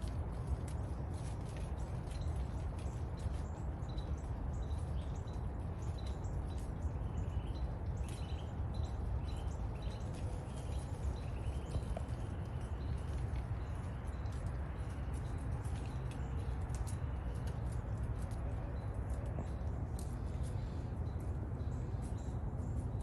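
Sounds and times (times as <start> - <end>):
dry leaves rustling: 0.0 - 23.0
low wind rumble: 0.0 - 23.0.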